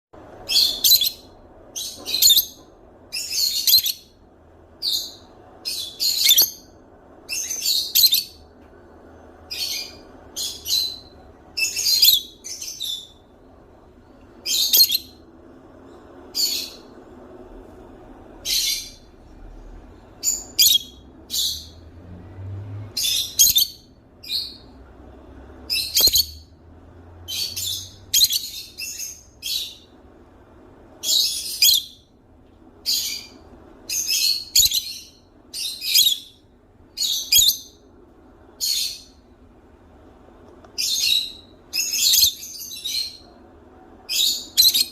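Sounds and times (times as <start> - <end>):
parrot high-pitched calls: 0.4 - 4.2, 4.8 - 6.7, 9.5 - 13.2, 14.4 - 15.2, 18.4 - 19.1, 20.2 - 21.8, 22.9 - 24.7, 25.7 - 26.5, 27.3 - 29.9, 31.0 - 32.1, 32.8 - 36.4, 37.0 - 37.8, 40.8 - 43.3, 44.1 - 44.9.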